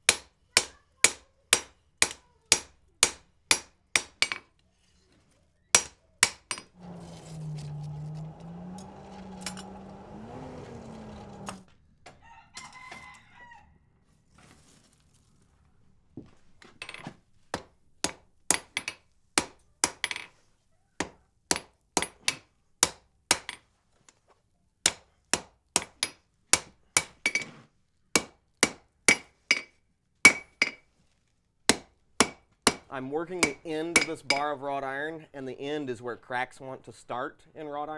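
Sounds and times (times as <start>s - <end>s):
hammer striking iron on anvil: 0.1s - 4.4s, 5.8s - 8.2s, 17.6s - 20.3s, 21.0s - 23.6s, 24.9s - 27.5s, 28.2s - 29.7s, 30.3s - 30.8s, 31.7s - 34.5s
rooster crowing: 6.8s - 13.9s.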